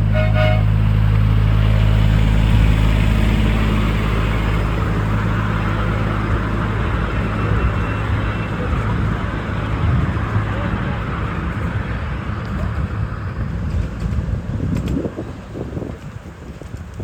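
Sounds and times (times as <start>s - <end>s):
two-note locomotive horn toot: 0.0s - 0.8s
locomotive engine running: 0.0s - 17.0s.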